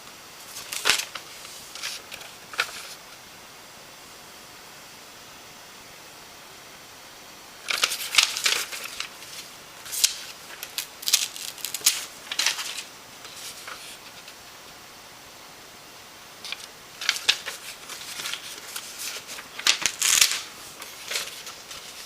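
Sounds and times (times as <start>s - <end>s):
low hiss: 0.0s - 22.0s
rustles and clicks of handling: 16.4s - 22.0s.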